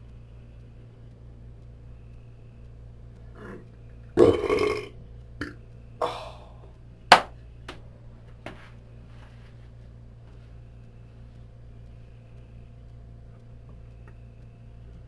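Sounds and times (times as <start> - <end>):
low steady hum: 0.0 - 15.0
person burping: 4.2 - 6.3.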